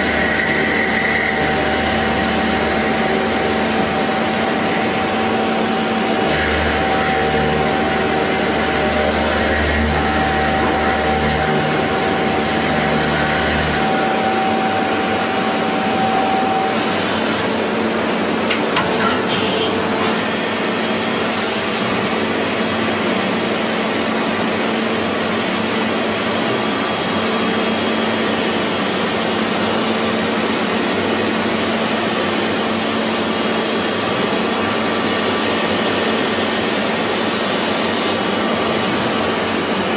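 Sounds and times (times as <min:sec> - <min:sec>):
machine tool running: 0:00.0 - 0:39.9
high steady whine: 0:19.4 - 0:39.9.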